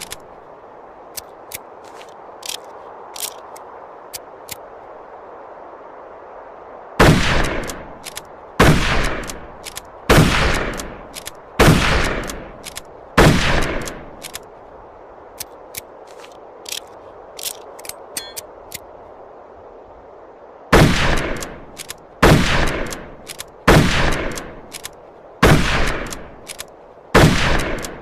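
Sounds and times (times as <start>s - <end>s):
light clicks: 1.1s - 4.7s, 7.4s - 8.4s, 9.0s - 11.4s, 12.1s - 13.0s, 13.8s - 14.5s, 22.8s - 25.0s, 25.8s - 26.8s, 27.6s - 28.0s
rifle shots with echo: 8.6s - 9.4s, 10.1s - 10.9s, 11.6s - 12.5s, 13.2s - 14.0s, 22.2s - 23.0s, 23.7s - 24.5s, 25.4s - 26.2s, 27.2s - 28.0s.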